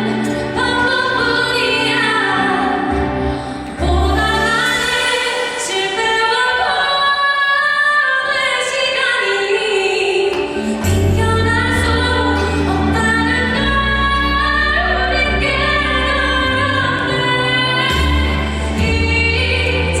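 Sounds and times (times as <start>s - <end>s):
instrumental backing: 9.9s - 20.0s
deep bass: 10.8s - 20.0s.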